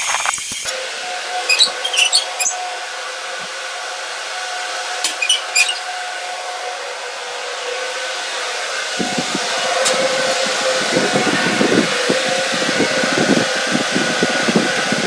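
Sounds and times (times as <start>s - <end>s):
sharp high squeaks: 0.0s - 0.7s, 1.4s - 2.8s, 4.9s - 6.0s
workshop tool whirring: 0.0s - 6.3s.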